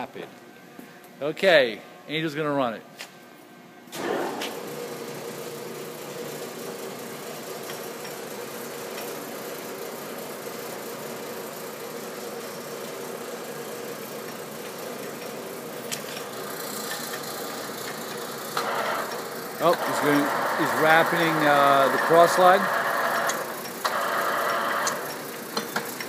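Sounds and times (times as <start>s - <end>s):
lathe humming: 11.8s - 26.0s.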